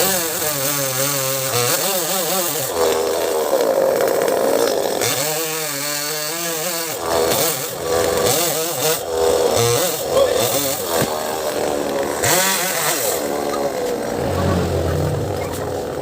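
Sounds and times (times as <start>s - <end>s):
chainsaw cutting wood: 0.0s - 16.0s.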